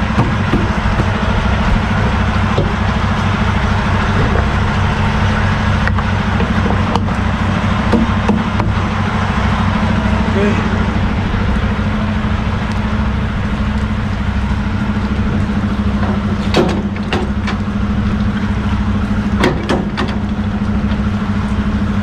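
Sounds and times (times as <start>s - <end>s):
sharp knocks: 0.0s - 4.8s, 7.9s - 8.9s, 16.0s - 17.6s, 19.4s - 20.4s
diesel truck engine idling: 0.0s - 22.0s
heavy rain: 0.0s - 22.0s.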